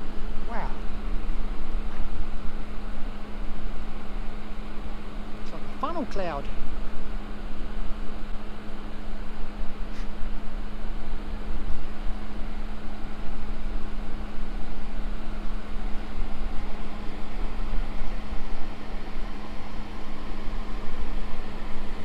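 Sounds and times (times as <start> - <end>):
constant low hum: 0.0 - 22.0
steady noisy hiss: 0.0 - 22.0.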